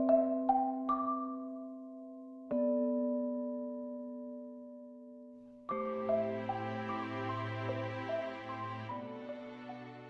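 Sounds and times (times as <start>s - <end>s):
soft background music: 0.0s - 10.0s.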